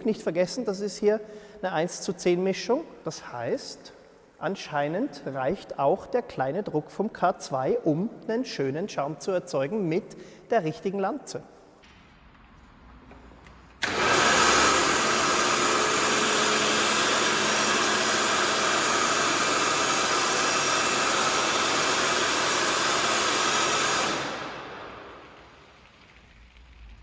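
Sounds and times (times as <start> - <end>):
pressure washer motor hum: 13.8 - 25.8.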